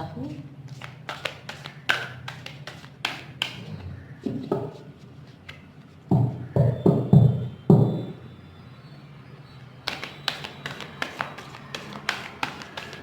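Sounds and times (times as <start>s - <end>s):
cards clicking while shuffled: 0.7s - 3.6s, 9.8s - 13.0s
cards thumping: 0.7s - 3.6s, 9.8s - 13.0s.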